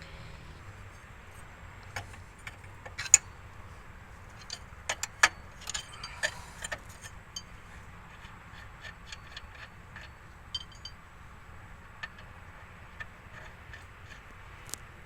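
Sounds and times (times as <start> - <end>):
metallic clinks of hand tools: 4.4 - 11.1.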